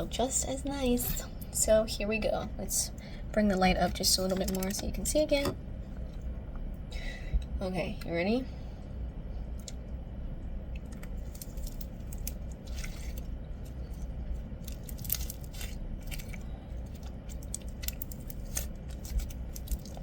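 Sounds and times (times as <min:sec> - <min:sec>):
slime crackling and clicking: 0:14.6 - 0:20.0.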